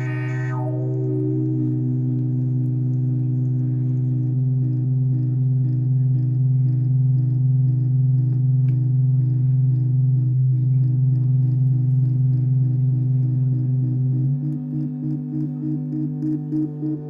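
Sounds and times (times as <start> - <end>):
pulsing high tone: 0.0 - 5.5, 14.1 - 17.0
synth low buzzing drone: 0.0 - 17.0.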